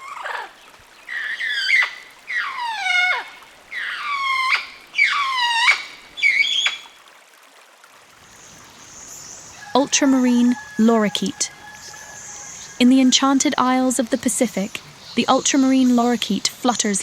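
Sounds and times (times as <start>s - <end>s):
parrot calling: 1.1s - 6.9s.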